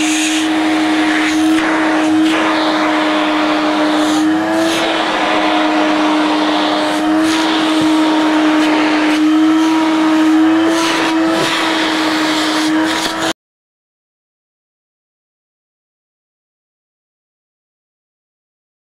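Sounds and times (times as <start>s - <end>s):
vacuum cleaner running: 0.0s - 13.4s.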